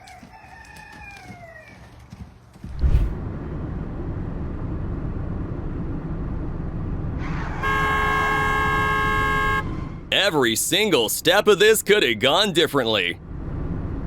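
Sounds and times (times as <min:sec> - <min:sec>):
steady low rumble: 0:02.7 - 0:03.8
vehicle horn held: 0:07.6 - 0:09.7.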